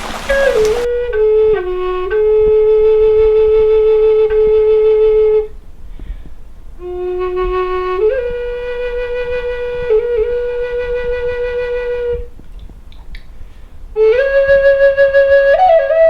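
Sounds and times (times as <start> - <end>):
breath: 5.8 - 6.4, 13.4 - 13.9
flute long-held notes: 6.8 - 12.3, 14.0 - 16.0.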